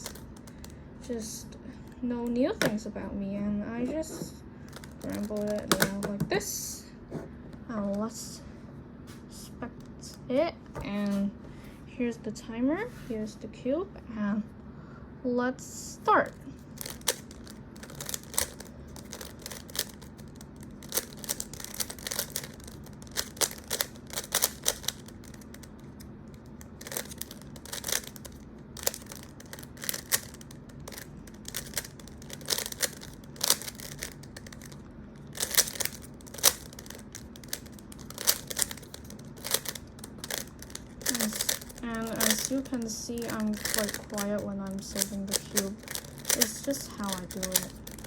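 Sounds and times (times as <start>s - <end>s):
puzzle cube clicking: 16.8s - 20.2s, 20.8s - 25.7s, 26.4s - 48.0s.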